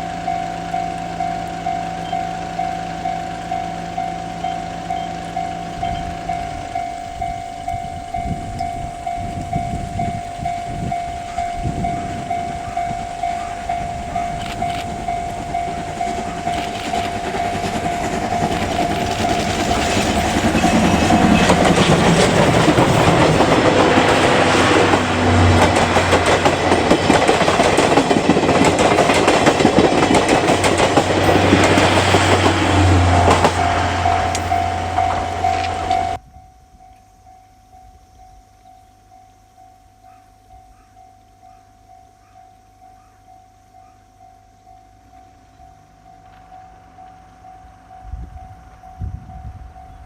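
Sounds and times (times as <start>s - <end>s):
level crossing warning bell: 0.0s - 36.2s, 37.1s - 50.0s
steam locomotive exhaust chuffs: 0.0s - 36.2s
wheels clattering over rail joints: 0.0s - 36.2s.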